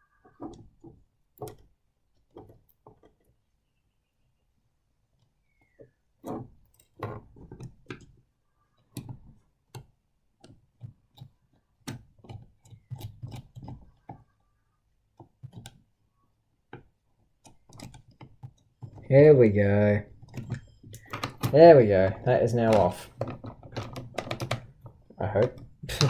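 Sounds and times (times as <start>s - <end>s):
loose parts being handled: 5.1s - 14.4s, 16.6s - 26.0s.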